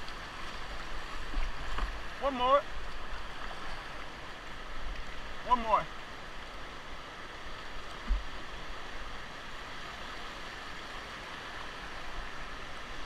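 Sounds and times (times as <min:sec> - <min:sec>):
whitewater river rushing: 0:00.0 - 0:13.0
low thump: 0:08.0 - 0:08.3.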